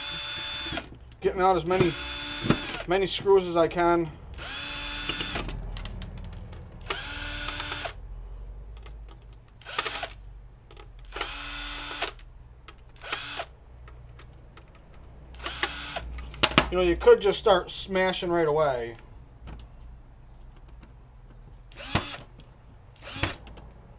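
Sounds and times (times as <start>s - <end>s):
electric screwdriver whining: 0.0s - 0.9s, 1.8s - 2.9s, 4.4s - 5.5s, 6.8s - 8.0s, 11.1s - 12.2s, 13.0s - 13.5s, 15.4s - 16.0s, 21.7s - 22.3s, 23.0s - 23.4s.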